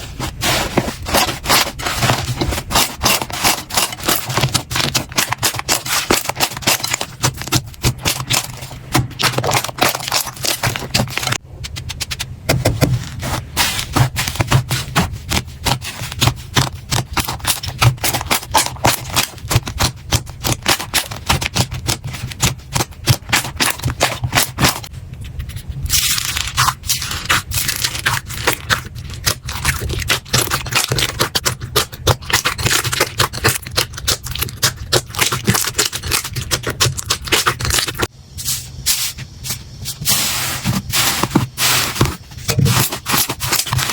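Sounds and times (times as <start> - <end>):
slime crackling and popping: 25.9 - 38.1.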